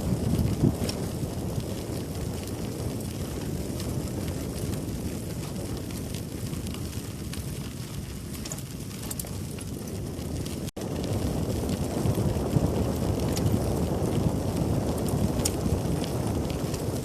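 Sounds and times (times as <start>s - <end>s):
bicycle tyres rolling on trail: 0.0s - 17.0s
wind buffeting microphone: 0.0s - 17.0s
faint ticks: 8.3s - 10.6s, 15.0s - 16.8s.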